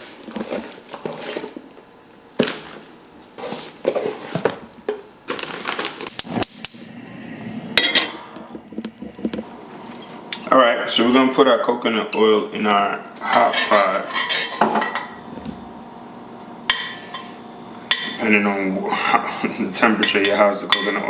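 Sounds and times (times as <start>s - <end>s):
scraping and rustling: 0.0s - 6.4s, 13.2s - 15.6s
pots and pans clanking: 7.8s - 10.5s, 13.2s - 15.6s, 16.6s - 18.3s, 19.9s - 21.0s.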